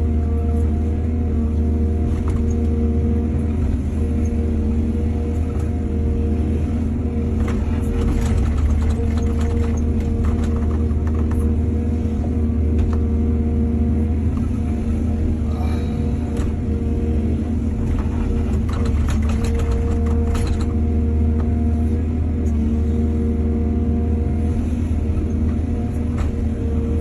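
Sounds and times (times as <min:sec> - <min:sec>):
heavy diesel engine droning: 0:00.0 - 0:27.0.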